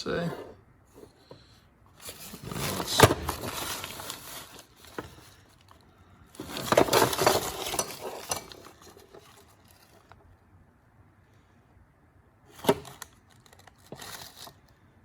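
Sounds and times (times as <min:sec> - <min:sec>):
tools rummaged in toolbox drawer: 0:02.0 - 0:05.7, 0:06.4 - 0:10.2, 0:12.5 - 0:14.7.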